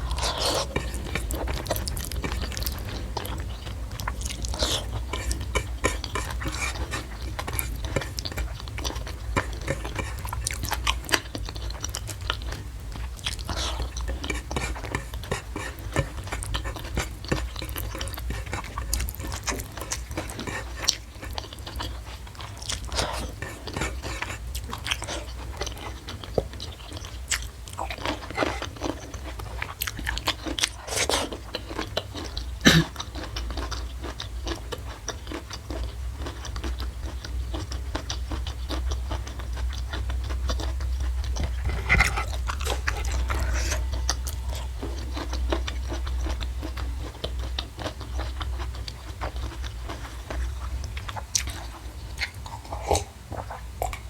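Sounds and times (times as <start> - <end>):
chewing crunchy food: 0.0 - 54.0.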